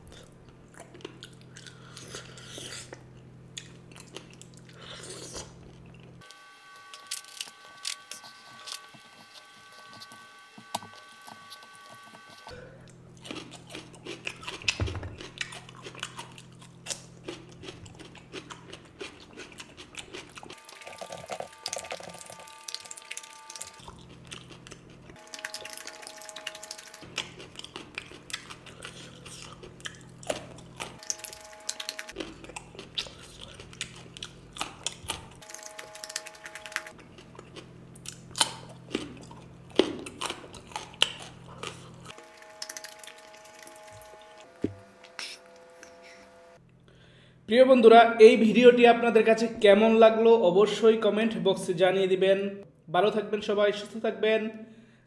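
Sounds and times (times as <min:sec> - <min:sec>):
chewing and mouth smacks: 0:00.1 - 0:06.2, 0:10.8 - 0:45.3.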